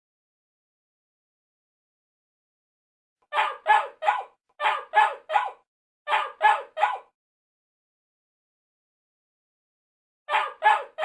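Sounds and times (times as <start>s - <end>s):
dog barking: 3.3s - 7.1s, 10.3s - 11.0s.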